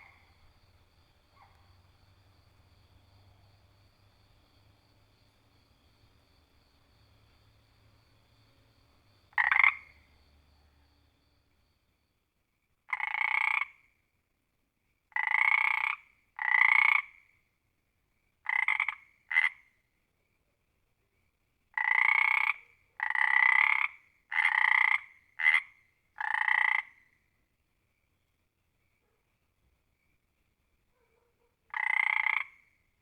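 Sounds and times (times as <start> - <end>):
frog croaking: 0.0 - 3.8, 8.1 - 10.2, 12.9 - 13.9, 15.1 - 17.3, 18.4 - 19.8, 21.7 - 27.2, 31.7 - 32.8.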